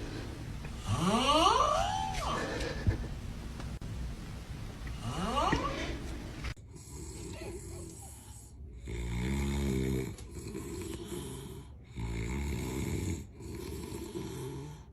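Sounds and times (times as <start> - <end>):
quiet breaths: 0.0 - 3.8, 4.8 - 14.9
person snoring: 0.8 - 3.0, 5.0 - 6.0.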